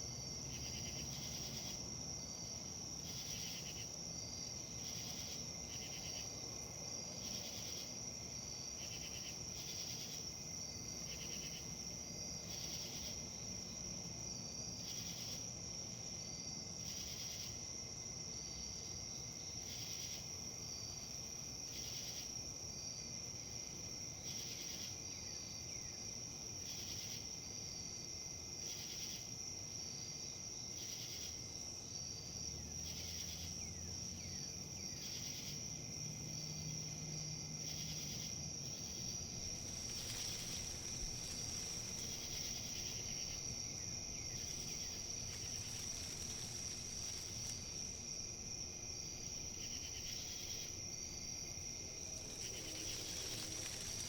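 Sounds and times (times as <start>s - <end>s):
insects trilling: 0.0s - 54.0s
wind rustle: 36.7s - 54.0s
pulsed insect chirping: 37.7s - 54.0s.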